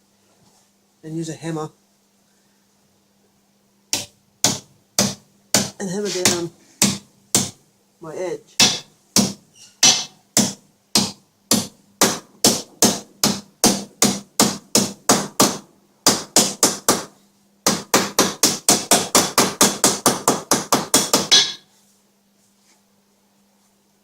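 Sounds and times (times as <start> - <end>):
hammer blows on sheet steel: 3.9 - 7.6, 8.6 - 21.7.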